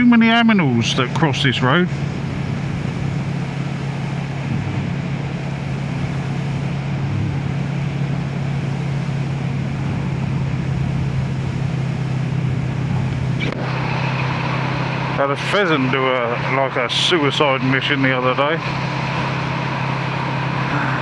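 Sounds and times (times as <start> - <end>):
motorcycle engine running: 1.0 - 21.0
wind noise on microphone: 2.0 - 7.6.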